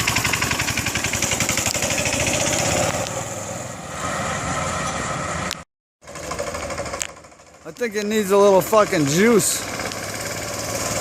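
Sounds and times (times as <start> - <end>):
small engine running: 0.0 - 3.5, 6.0 - 11.0.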